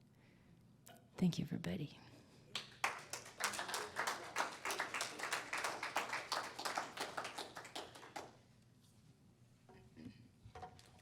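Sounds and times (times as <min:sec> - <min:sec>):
congregation clapping: 0:02.5 - 0:08.4.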